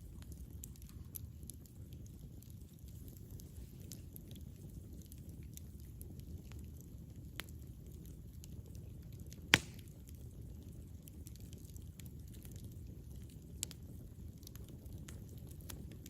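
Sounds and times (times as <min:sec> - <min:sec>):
campfire crackling: 0:00.0 - 0:16.0
fire popping: 0:00.0 - 0:16.0.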